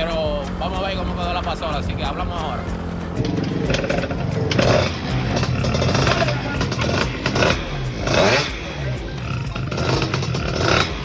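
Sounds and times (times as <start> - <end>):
scooter engine revving: 2.7 - 11.0.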